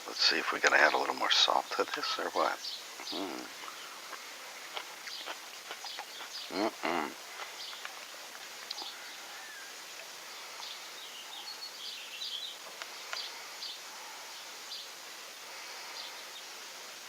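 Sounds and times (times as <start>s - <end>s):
outdoor background hiss: 0.0s - 17.0s
bird chirps: 8.7s - 13.8s.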